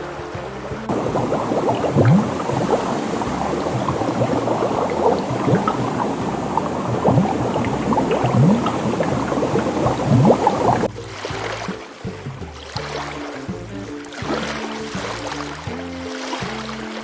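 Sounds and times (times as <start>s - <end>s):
water bubbling and gurgling: 0.0s - 10.9s.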